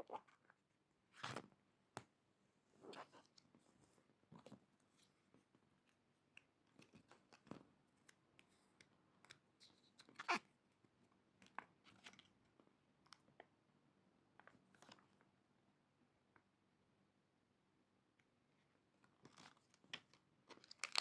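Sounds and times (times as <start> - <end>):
plastic packaging crinkling: 20.6 - 21.0.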